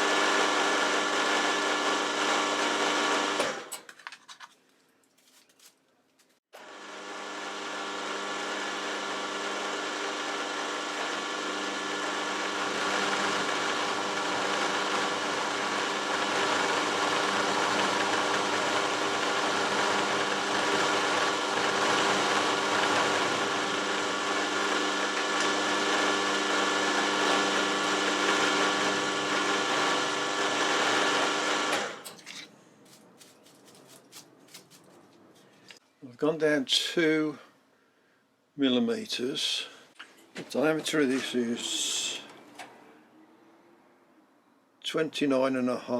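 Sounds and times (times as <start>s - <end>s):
milling machine whining: 6.6s - 32.2s.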